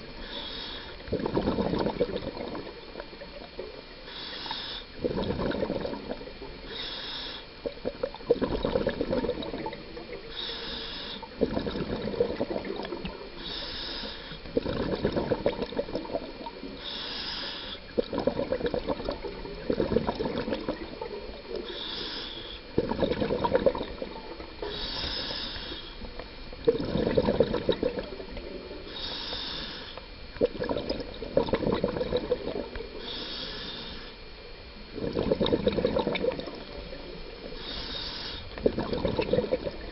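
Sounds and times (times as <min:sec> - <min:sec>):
regulator hissing inhale: 0:00.1 - 0:01.1, 0:04.0 - 0:05.0, 0:06.6 - 0:07.6, 0:10.2 - 0:11.4, 0:13.3 - 0:14.6, 0:16.6 - 0:18.0, 0:21.5 - 0:22.8, 0:24.6 - 0:26.1, 0:28.7 - 0:30.1, 0:32.8 - 0:34.4, 0:37.4 - 0:38.7
gurgle of exhaled bubbles: 0:00.9 - 0:04.0, 0:05.0 - 0:06.7, 0:07.6 - 0:10.3, 0:11.2 - 0:13.4, 0:14.4 - 0:16.8, 0:17.8 - 0:21.7, 0:22.7 - 0:25.4, 0:26.0 - 0:28.9, 0:30.3 - 0:33.2, 0:34.2 - 0:37.6, 0:38.3 - 0:39.9.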